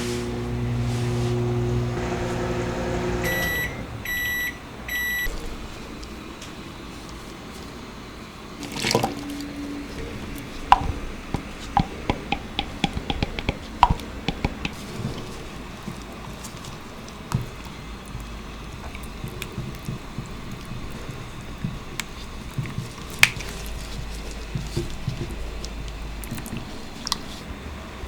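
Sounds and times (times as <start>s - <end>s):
liquid rushing: 5.3s - 28.0s
small drips and clicks: 8.6s - 27.4s.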